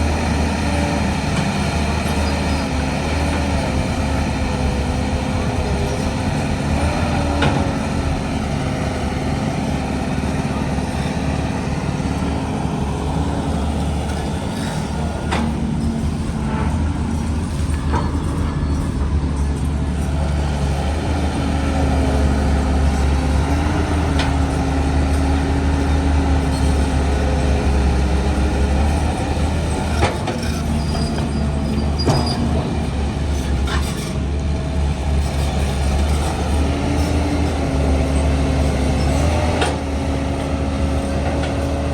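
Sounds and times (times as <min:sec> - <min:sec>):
heavy machinery diesel engine running: 0:00.0 - 0:41.9.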